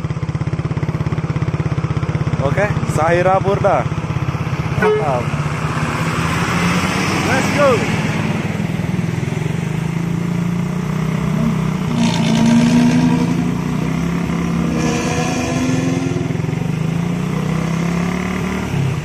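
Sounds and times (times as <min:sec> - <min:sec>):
bus diesel engine pulling away: 0:04.4 - 0:10.2.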